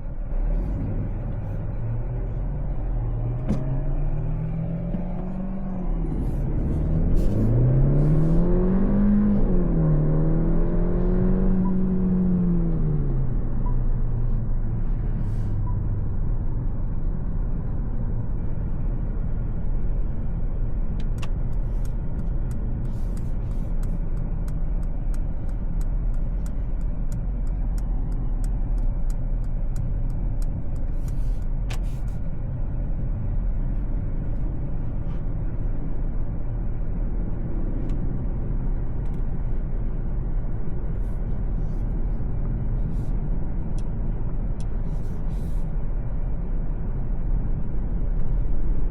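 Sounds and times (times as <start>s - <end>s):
car engine and tyre noise: 0.0s - 48.9s
light ticks: 21.0s - 31.9s.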